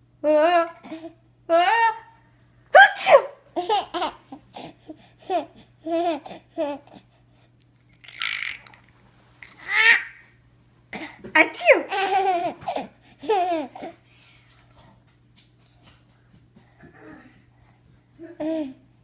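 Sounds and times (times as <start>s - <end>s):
baby laughing and squealing: 9.5s - 10.2s.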